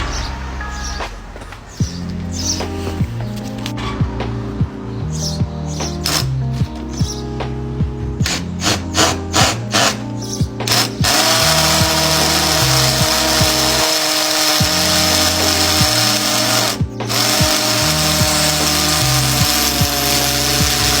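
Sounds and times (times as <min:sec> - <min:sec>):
electric drill with masonry bit: 0:06.1 - 0:06.3, 0:08.3 - 0:10.0, 0:10.7 - 0:21.0.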